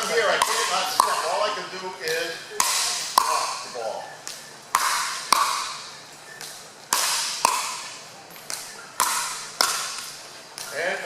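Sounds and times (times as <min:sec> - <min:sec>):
ball bouncing on court: 0:00.0 - 0:11.0
ball popping off paddles: 0:00.0 - 0:11.0.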